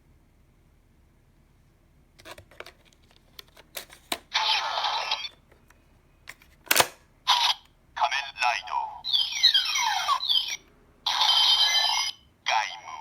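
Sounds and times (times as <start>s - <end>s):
plastic clicks of card handling: 2.2s - 4.3s, 5.3s - 7.0s
toy gun electronic sound effect: 9.1s - 12.2s.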